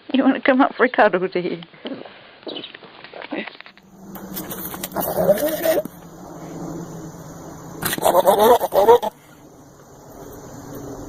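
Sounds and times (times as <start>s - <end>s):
animal calling with quavering pitch: 4.0s - 6.2s, 7.8s - 9.4s.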